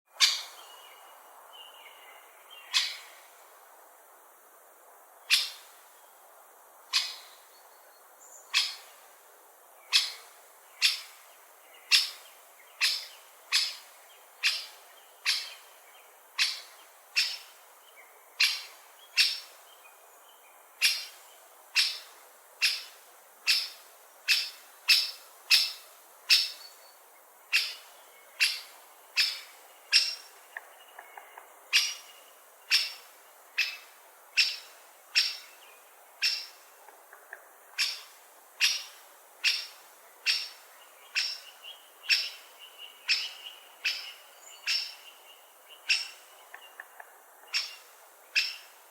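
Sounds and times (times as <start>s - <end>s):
woodpecker calling: 0.1s - 0.8s, 2.6s - 3.2s, 5.3s - 5.7s, 6.9s - 7.4s, 8.5s - 9.0s, 9.9s - 15.8s, 16.4s - 17.6s, 18.4s - 19.6s, 20.8s - 26.7s, 27.5s - 35.6s, 36.2s - 48.8s.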